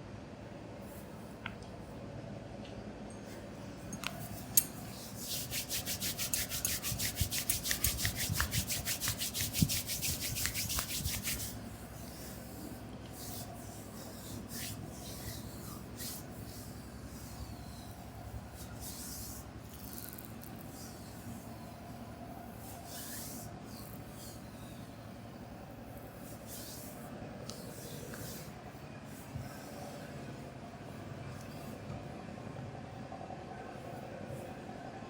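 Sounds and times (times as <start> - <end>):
hands rubbing oiled skin: 4.1 - 11.6.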